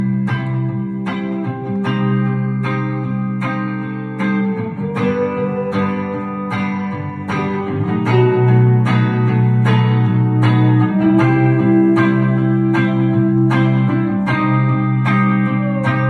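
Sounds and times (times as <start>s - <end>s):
guitar chords: 0.0s - 16.0s
low bass: 4.2s - 16.0s.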